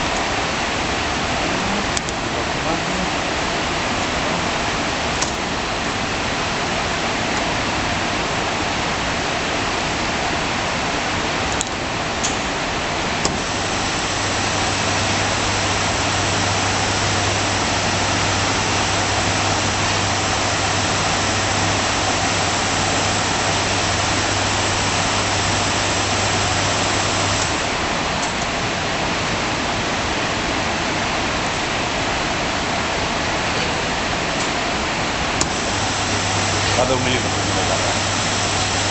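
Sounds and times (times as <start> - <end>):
bandsaw machine noise: 13.2 - 27.8, 35.4 - 38.9
low hum: 35.4 - 38.9.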